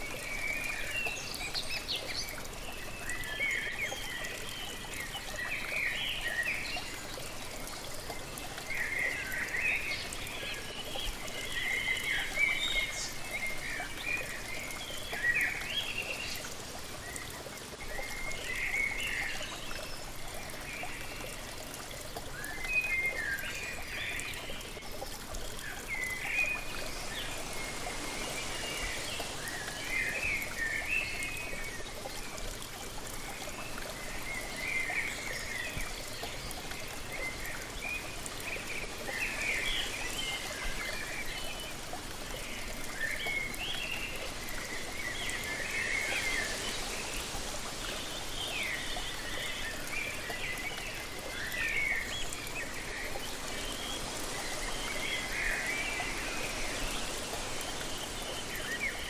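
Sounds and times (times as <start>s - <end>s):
waterfall rushing: 25.8s - 31.8s, 44.4s - 50.4s, 51.0s - 59.0s.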